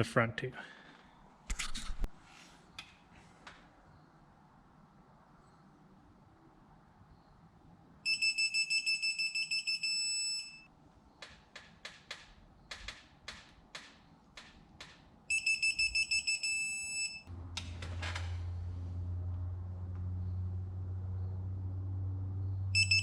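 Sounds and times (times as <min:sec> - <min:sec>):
torque wrench beeping: 0:08.1 - 0:10.7, 0:15.3 - 0:17.3, 0:22.8 - 0:23.0.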